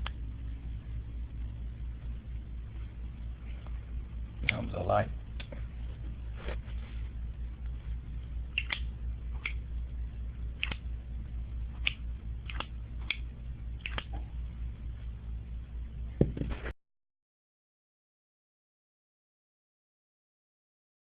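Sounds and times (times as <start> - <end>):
low steady hum: 0.0 - 16.8.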